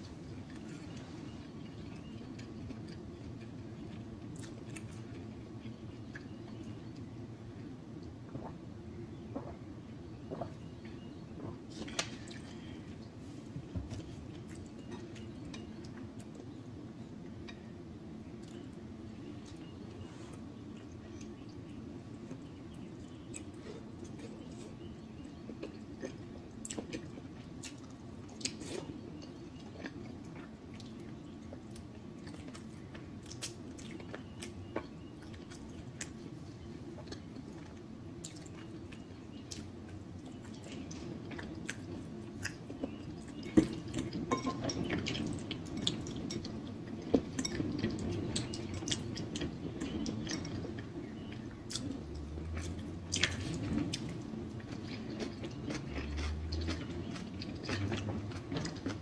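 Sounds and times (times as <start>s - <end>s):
wet chewing and mouth smacking: 22.3s - 59.0s.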